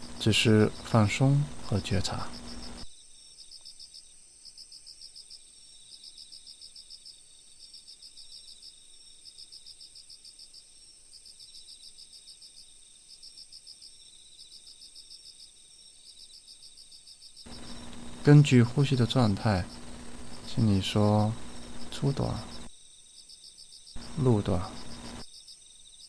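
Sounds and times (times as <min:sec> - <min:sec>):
high insect whine: 0:00.0 - 0:04.0, 0:17.4 - 0:23.0, 0:23.9 - 0:25.6
crickets chirping: 0:00.0 - 0:26.0.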